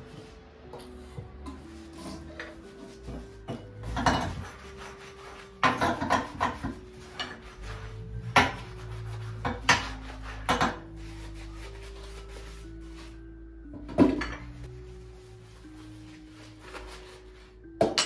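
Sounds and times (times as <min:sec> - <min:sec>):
soft background music: 0:00.0 - 0:18.0
dishes and utensils clattering: 0:00.7 - 0:05.0, 0:05.6 - 0:08.7, 0:09.4 - 0:10.9, 0:13.7 - 0:14.7, 0:17.8 - 0:18.0.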